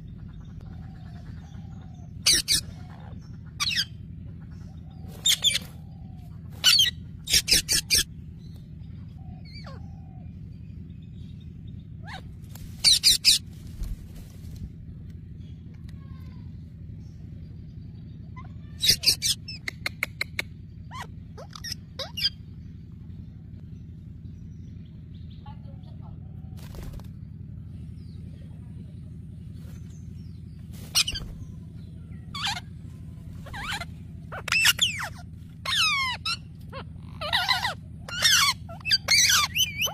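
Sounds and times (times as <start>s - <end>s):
parrots calling and shrieking: 0.0s - 10.4s, 11.7s - 14.6s, 18.0s - 22.8s, 29.7s - 39.9s
steady low hum: 0.0s - 39.9s.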